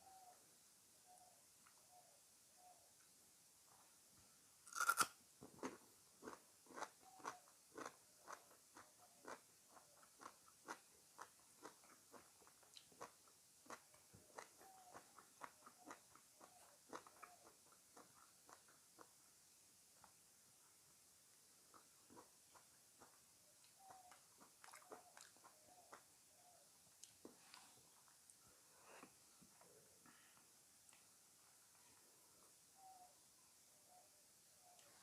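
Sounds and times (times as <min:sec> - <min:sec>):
crunchy bite into fruit: 0:04.7 - 0:09.4
close-up chewing with crisp clicks: 0:05.6 - 0:28.5, 0:30.8 - 0:31.1.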